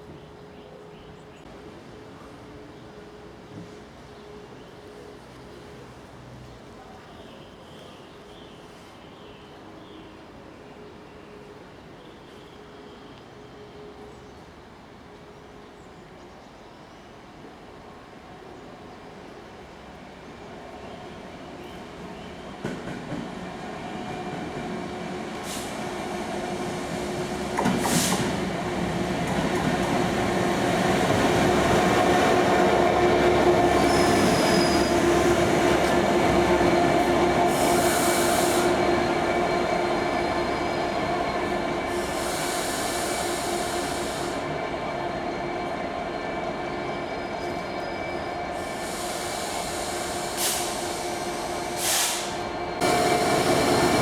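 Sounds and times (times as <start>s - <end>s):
train engine drone: 17.3s - 54.0s
high hissing: 48.6s - 54.0s.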